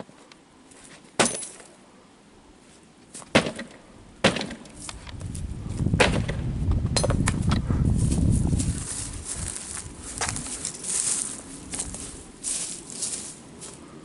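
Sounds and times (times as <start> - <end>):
axe chopping firewood: 1.2 - 1.6, 3.2 - 4.7, 6.0 - 6.4
low rumbling noise: 4.9 - 14.0.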